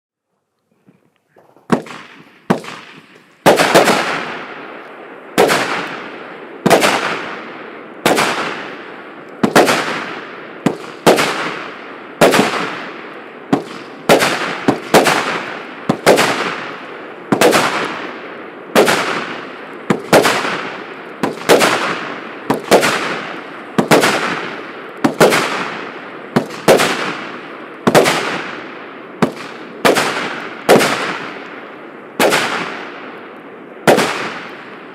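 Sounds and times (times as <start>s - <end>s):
light firework pops: 1.3s - 6.0s, 9.3s - 11.6s, 18.8s - 28.6s, 29.2s - 31.6s
fireworks bangs: 1.3s - 34.9s.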